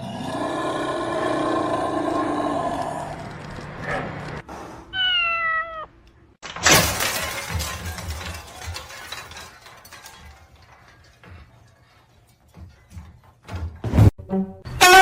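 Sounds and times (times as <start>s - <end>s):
loud shattering crash: 6.4s - 12.0s
clattering and rattling: 6.4s - 14.1s.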